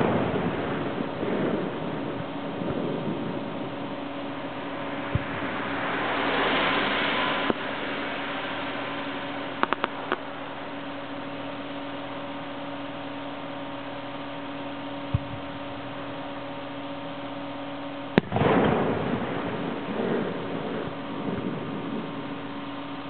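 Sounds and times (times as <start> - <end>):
firework bang with noisy tail: 0.0 - 10.3, 15.1 - 16.0, 18.1 - 23.0
steady background hum: 0.0 - 23.0
firework launch thump: 5.1 - 5.6, 18.2 - 20.8.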